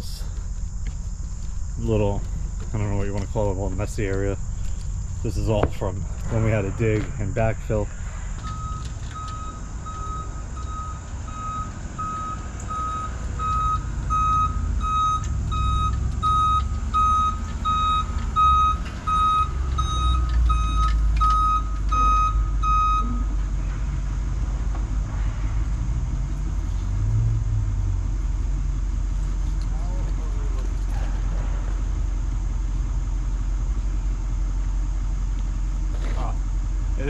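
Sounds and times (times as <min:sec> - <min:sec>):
truck backup alarm beeping: 0:00.0 - 0:23.6
truck engine running: 0:00.0 - 0:37.0.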